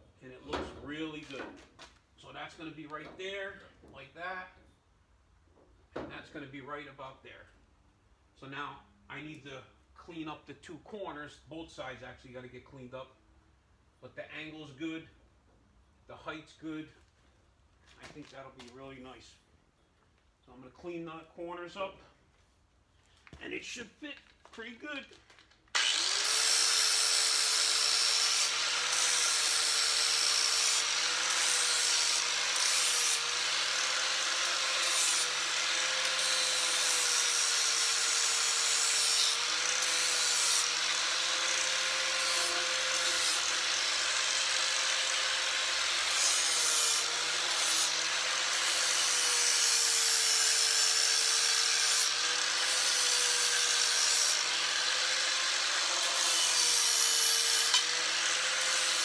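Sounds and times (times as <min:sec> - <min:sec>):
electric grinder grinding metal tube: 0:25.8 - 0:59.0.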